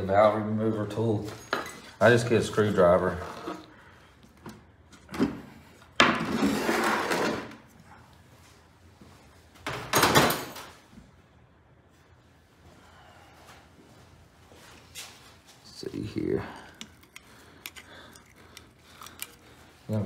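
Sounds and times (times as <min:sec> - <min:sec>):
tools clattering on workbench: 0:01.2 - 0:02.0.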